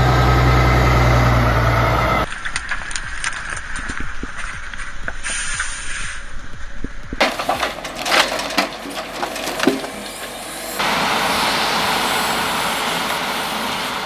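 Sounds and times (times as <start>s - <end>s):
sharp wood cracks: 2.3s - 10.1s
wood knocking and splintering: 6.8s - 10.1s.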